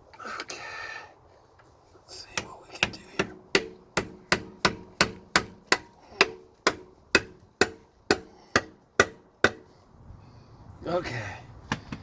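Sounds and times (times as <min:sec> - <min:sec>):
hammer striking a chisel: 0:02.4 - 0:09.7.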